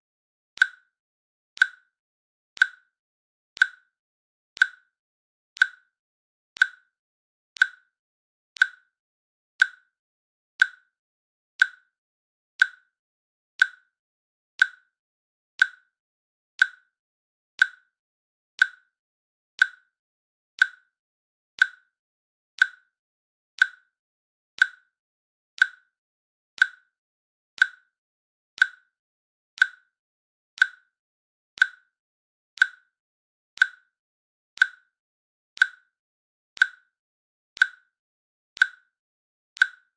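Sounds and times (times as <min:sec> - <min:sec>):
timer clicks: 0:00.6 - 0:01.0, 0:01.6 - 0:02.0, 0:02.6 - 0:03.0, 0:03.6 - 0:04.0, 0:04.6 - 0:05.0, 0:05.6 - 0:06.0, 0:06.6 - 0:07.0, 0:07.6 - 0:08.0, 0:08.6 - 0:09.0, 0:09.6 - 0:10.0, 0:10.6 - 0:11.0, 0:11.6 - 0:12.0, 0:12.6 - 0:13.0, 0:13.6 - 0:14.0, 0:14.6 - 0:15.0, 0:15.6 - 0:16.0, 0:16.6 - 0:17.0, 0:17.6 - 0:18.0, 0:18.6 - 0:19.0, 0:19.6 - 0:20.0, 0:20.6 - 0:21.0, 0:21.6 - 0:22.0, 0:22.6 - 0:23.0, 0:23.6 - 0:24.0, 0:24.6 - 0:25.0, 0:25.6 - 0:26.0, 0:26.6 - 0:27.0, 0:27.6 - 0:28.0, 0:28.6 - 0:29.0, 0:29.6 - 0:30.0, 0:30.6 - 0:31.0, 0:31.6 - 0:32.0, 0:32.6 - 0:33.0, 0:33.6 - 0:34.0, 0:34.6 - 0:35.0, 0:35.6 - 0:36.0, 0:36.6 - 0:37.0, 0:37.6 - 0:38.0, 0:38.6 - 0:39.0, 0:39.6 - 0:39.9.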